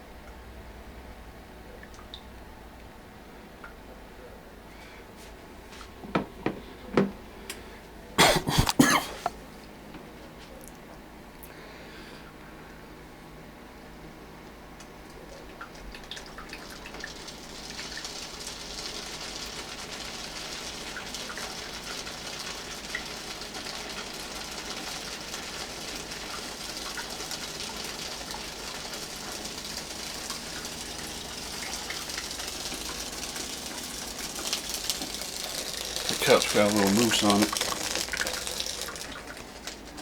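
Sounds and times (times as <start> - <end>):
coffee maker water pouring: 15.1 - 40.0.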